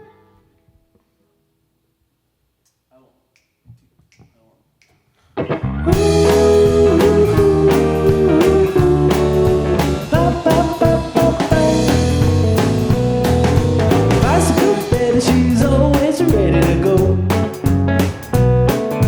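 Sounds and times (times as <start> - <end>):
bending guitar melody: 5.4 - 19.0
steady bass line: 5.6 - 19.0
regular drum beat: 5.9 - 19.0.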